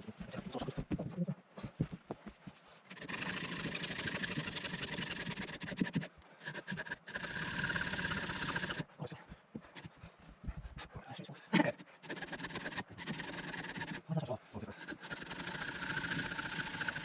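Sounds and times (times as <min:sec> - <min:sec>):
hacksaw cutting through log: 0:02.9 - 0:08.9, 0:11.6 - 0:17.0.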